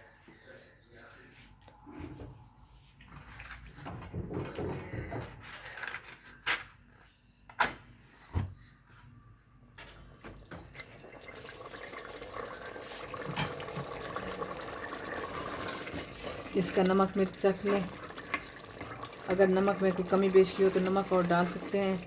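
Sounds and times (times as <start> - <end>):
pot bubbling: 10.3 - 22.0.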